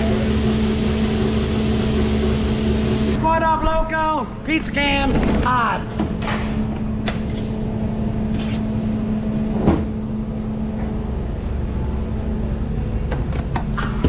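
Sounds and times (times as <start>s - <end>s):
kitchen equipment humming: 0.0s - 3.2s.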